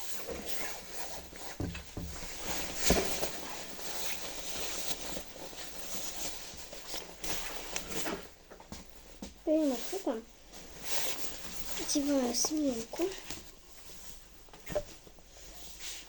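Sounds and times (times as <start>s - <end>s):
jacket and backpack rustling: 0.0s - 16.0s
soft knocks and bumps: 1.2s - 3.7s.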